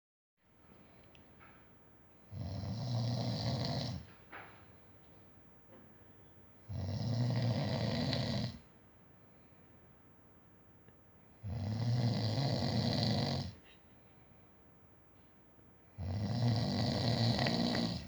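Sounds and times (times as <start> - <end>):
man snoring: 2.3 - 4.1, 6.7 - 8.6, 11.4 - 13.6, 16.0 - 18.0.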